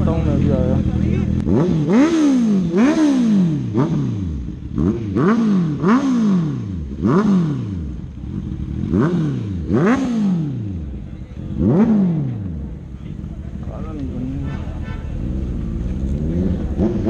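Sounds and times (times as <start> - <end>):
motorcycle engines revving: 0.0 - 17.0.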